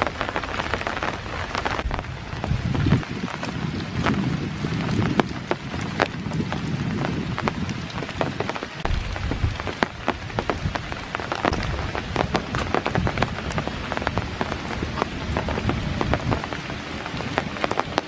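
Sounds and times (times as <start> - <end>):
raindrops ticking: 0.0 - 18.0
low rumble: 1.1 - 5.8, 8.8 - 16.4.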